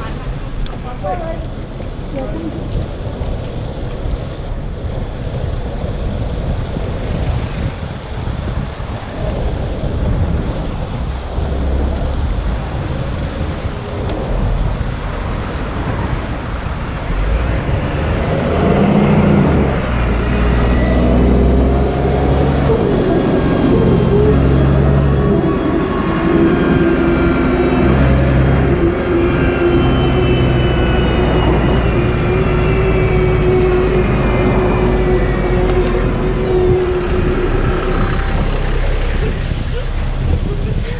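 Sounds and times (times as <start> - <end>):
vehicle rumble: 0.0 - 40.9
whining tones: 16.9 - 40.9.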